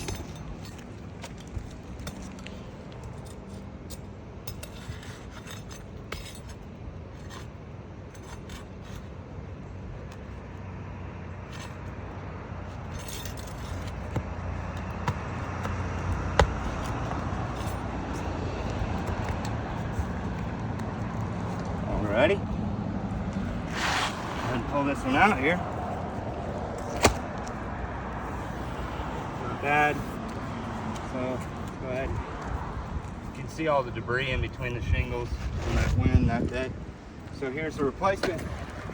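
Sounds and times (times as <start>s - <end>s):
metal tool scraping shingles: 0.0s - 9.2s, 12.7s - 18.7s, 23.5s - 25.6s.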